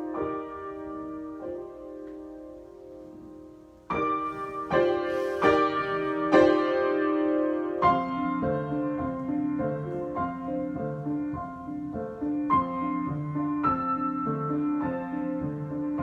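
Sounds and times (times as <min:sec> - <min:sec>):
solo piano improvisation: 0:00.0 - 0:16.0.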